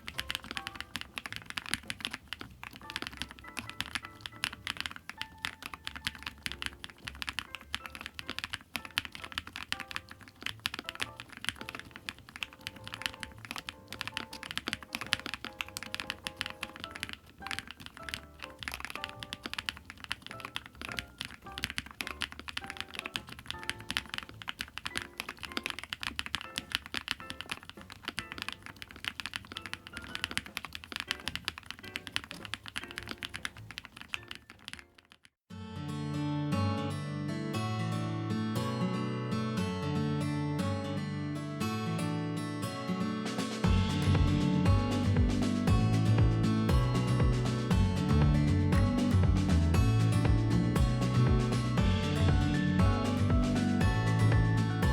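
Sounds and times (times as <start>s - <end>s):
background music: 0.0s - 34.6s, 35.6s - 54.9s
mechanical keyboard typing: 0.0s - 35.3s.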